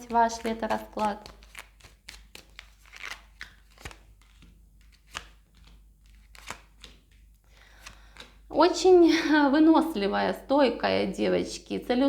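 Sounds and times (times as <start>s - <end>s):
paper rustling: 0.0s - 8.5s
cards snapping and clicking: 0.3s - 8.5s.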